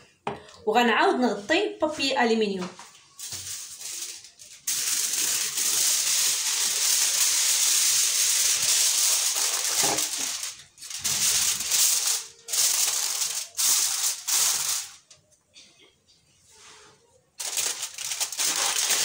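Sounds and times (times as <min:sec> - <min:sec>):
aluminium foil crinkling: 0:03.1 - 0:15.2, 0:17.4 - 0:19.0.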